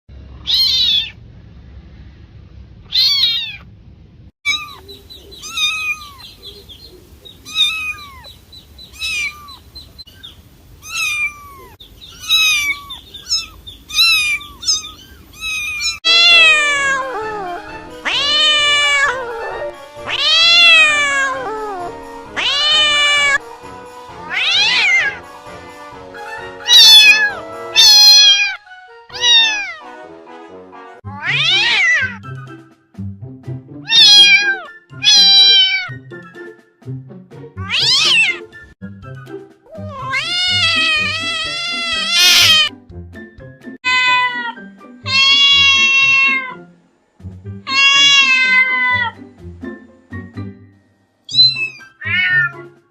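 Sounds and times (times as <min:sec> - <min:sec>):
cats meowing: 0:00.4 - 0:01.2, 0:02.9 - 0:03.7, 0:04.5 - 0:06.7, 0:07.3 - 0:08.3, 0:08.9 - 0:09.7, 0:10.8 - 0:23.4, 0:24.2 - 0:25.2, 0:26.7 - 0:29.8, 0:31.1 - 0:32.2, 0:33.9 - 0:36.0, 0:37.6 - 0:38.5, 0:39.7 - 0:42.7, 0:43.8 - 0:46.6, 0:47.7 - 0:49.2, 0:51.3 - 0:52.7
music: 0:16.0 - 0:52.9.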